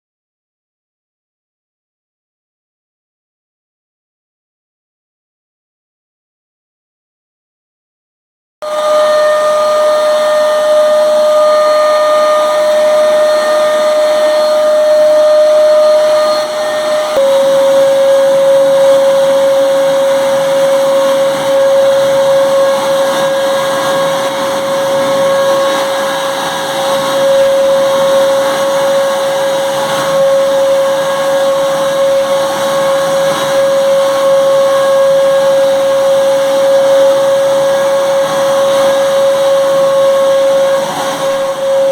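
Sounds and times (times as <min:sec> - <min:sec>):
vacuum cleaner motor whining: 0:08.6 - 0:41.9.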